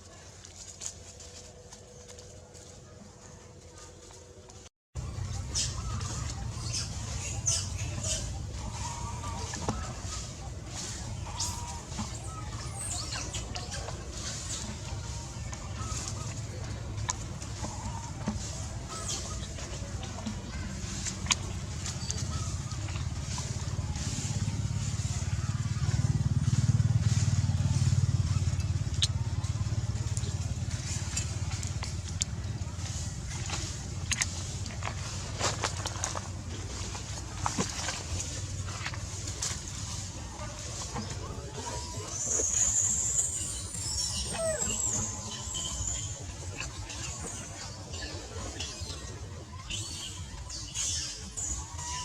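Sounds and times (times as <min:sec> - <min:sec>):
steady low rumble: 0:05.0 - 0:49.7
mid-pitched animal calls: 0:41.8 - 0:46.0.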